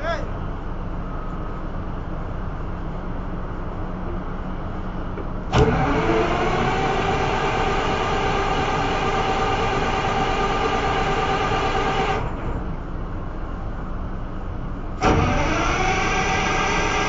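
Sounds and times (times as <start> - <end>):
low machinery hum: 0.0 - 17.0
motor whine: 5.5 - 12.6, 15.0 - 17.0.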